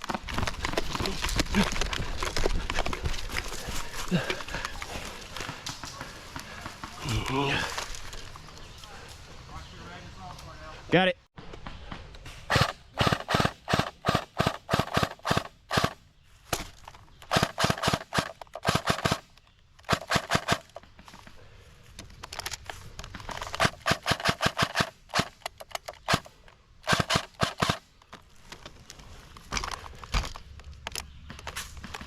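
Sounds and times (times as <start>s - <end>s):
airsoft rifle rapid shots: 12.5s - 16.0s, 17.3s - 20.8s, 23.6s - 27.8s.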